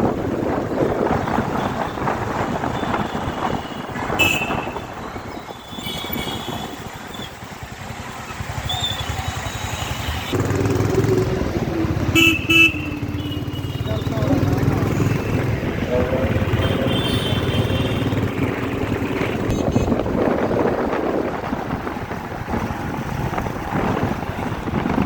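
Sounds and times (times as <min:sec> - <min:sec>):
vehicles passing with rushing noise: 0:00.0 - 0:25.0
vehicle engine passing close: 0:10.4 - 0:12.2.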